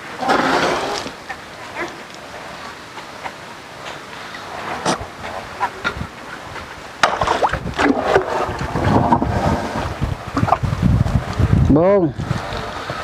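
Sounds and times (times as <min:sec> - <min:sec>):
low rumbling: 0:04.1 - 0:13.0.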